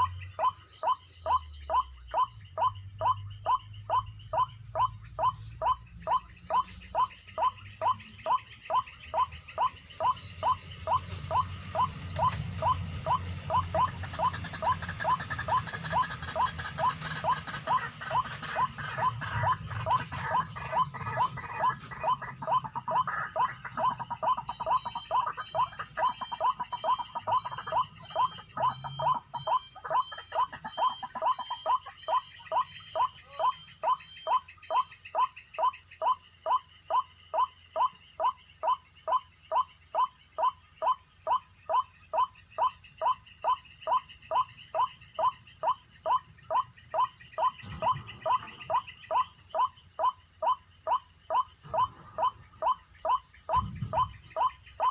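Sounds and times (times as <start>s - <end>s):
bird calling: 0.0s - 54.9s.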